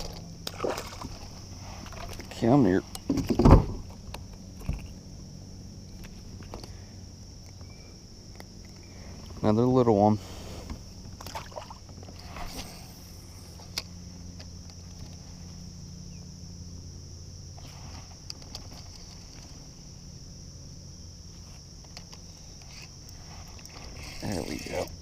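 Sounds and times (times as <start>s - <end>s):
insects chirring: 0.0s - 25.0s.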